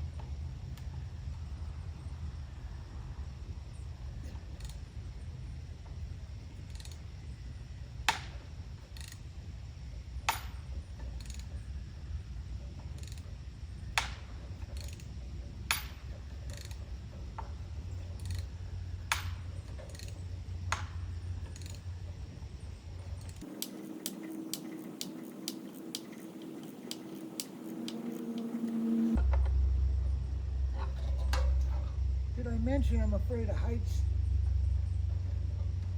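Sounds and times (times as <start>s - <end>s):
low hum: 11.5s - 35.9s
ratchet wrench clicking: 13.0s - 13.2s, 18.2s - 18.5s, 23.3s - 28.9s
low rumble: 27.8s - 35.9s.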